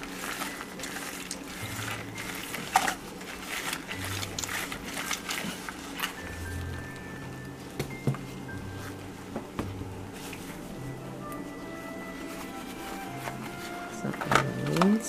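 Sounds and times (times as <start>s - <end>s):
wet squelching of squeezed orange: 0.0s - 9.0s.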